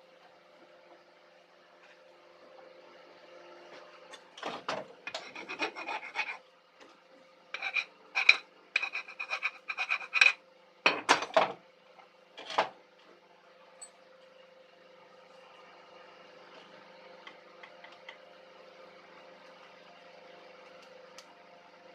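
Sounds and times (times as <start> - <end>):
rasping strokes on metal: 5.0 - 6.4, 7.5 - 10.4.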